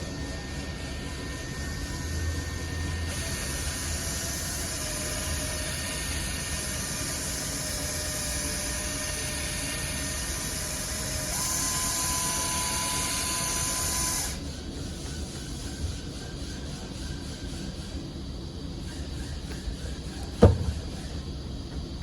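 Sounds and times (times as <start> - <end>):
buffer motor whine: 0.0 - 14.6, 19.2 - 22.0
polishing pad hissing: 0.0 - 22.0.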